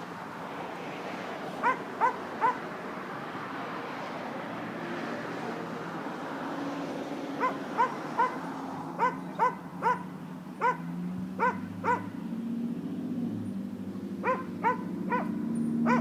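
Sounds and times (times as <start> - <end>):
dog yipping: 1.6 - 2.6, 7.4 - 8.4, 9.0 - 12.1, 14.2 - 16.0.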